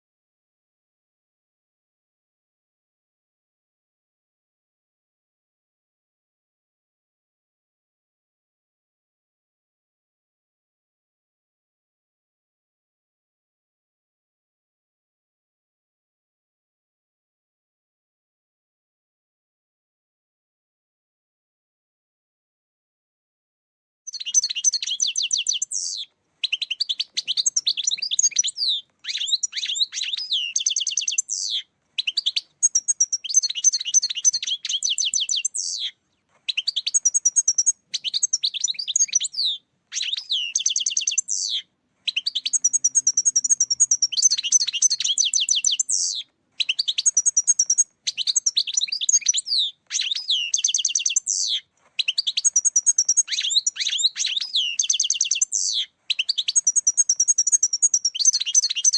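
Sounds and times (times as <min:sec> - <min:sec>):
goldfinch twittering: 0:24.1 - 0:35.9, 0:36.5 - 0:58.9.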